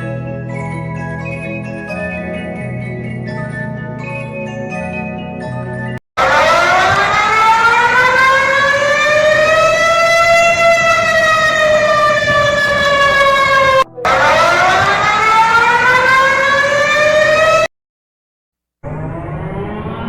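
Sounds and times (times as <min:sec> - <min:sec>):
warning siren wailing: 0:06.2 - 0:17.7, 0:18.8 - 0:20.0.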